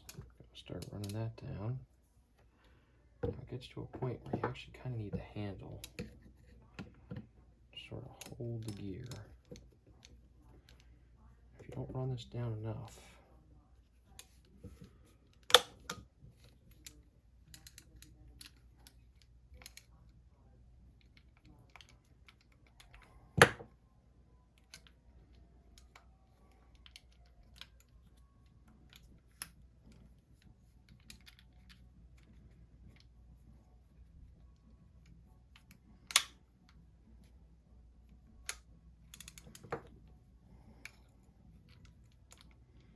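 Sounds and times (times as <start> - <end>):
light clicks and taps of reel parts: 0.0 - 1.6, 8.0 - 10.9, 14.0 - 20.0, 38.0 - 40.0.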